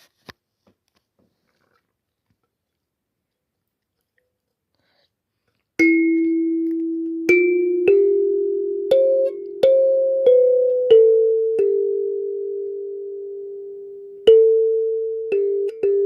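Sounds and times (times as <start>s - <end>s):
kalimba slow melody: 5.8s - 16.0s.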